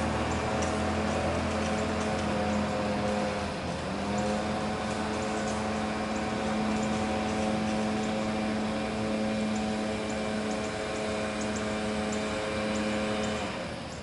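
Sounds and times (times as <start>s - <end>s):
blower engine running: 0.0s - 14.0s.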